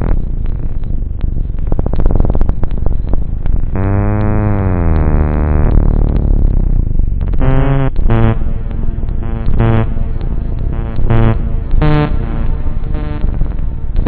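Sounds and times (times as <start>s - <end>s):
steady low rumble: 0.0s - 14.0s
short pitched stabs: 1.5s - 14.0s
buzzy tone dipping in pitch: 3.6s - 14.0s.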